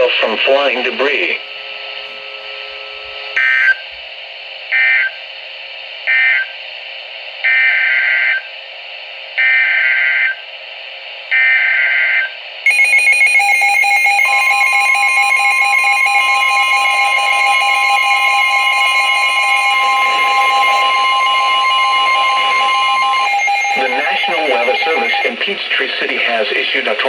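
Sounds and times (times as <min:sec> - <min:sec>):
screeching data bursts: 0:12.7 - 0:25.4
second steady tone: 0:12.7 - 0:25.4
warning alarm tone: 0:12.7 - 0:25.4.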